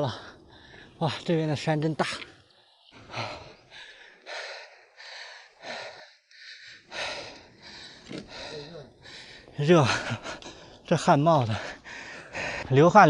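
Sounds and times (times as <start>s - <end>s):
man breathing hard: 0.0s - 1.0s, 3.0s - 10.9s, 11.5s - 12.8s.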